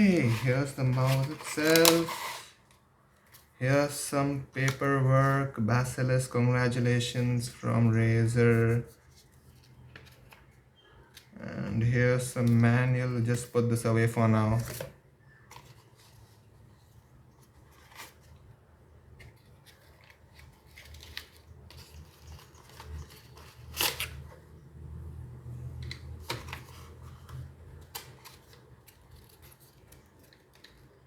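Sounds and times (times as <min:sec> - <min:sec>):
packaging rustling: 0:00.0 - 0:03.6, 0:15.2 - 0:24.3.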